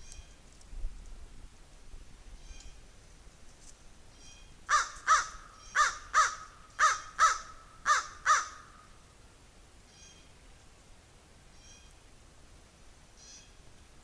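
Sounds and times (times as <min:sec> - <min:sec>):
crow cawing: 0:04.7 - 0:08.9.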